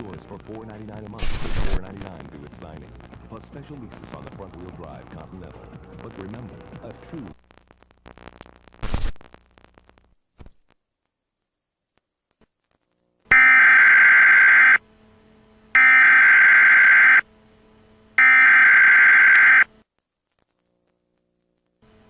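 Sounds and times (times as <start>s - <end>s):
screechy digital data bursts: 1.2s - 1.9s, 13.3s - 14.8s, 15.8s - 17.2s, 18.2s - 19.7s.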